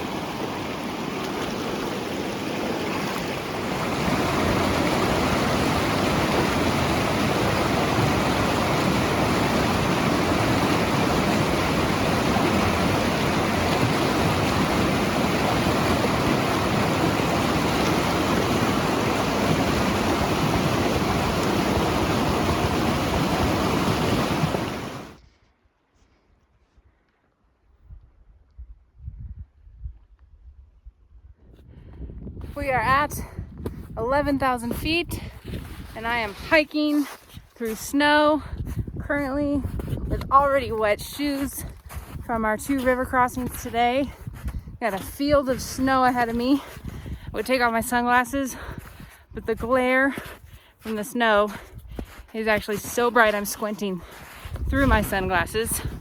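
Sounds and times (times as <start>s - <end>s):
river rushing: 0.0s - 25.2s.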